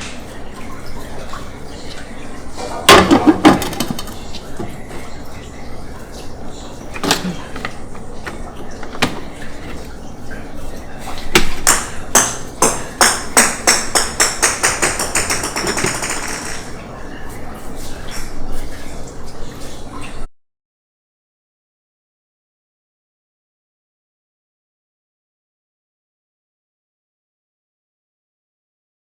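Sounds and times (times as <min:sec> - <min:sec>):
knocks: 0:02.9 - 0:04.8, 0:07.0 - 0:09.9
small object clattering: 0:02.9 - 0:04.8, 0:14.8 - 0:16.8.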